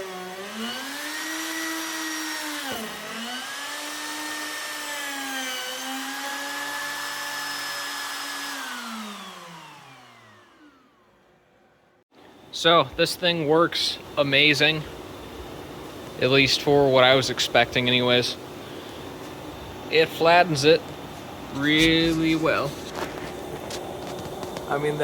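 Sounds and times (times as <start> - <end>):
wood router cutting board: 0.0 - 11.3
router winding down: 0.0 - 11.7.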